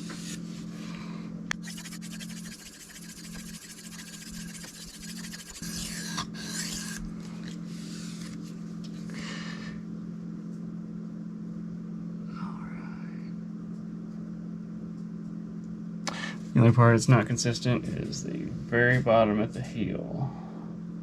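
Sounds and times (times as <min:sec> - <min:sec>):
steady low hum: 0:00.0 - 0:21.0
knife scraping on whetstone: 0:01.6 - 0:07.1.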